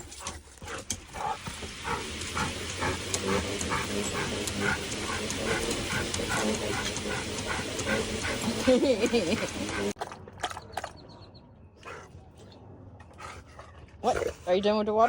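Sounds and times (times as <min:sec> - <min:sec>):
dog lapping water: 0:00.0 - 0:11.0.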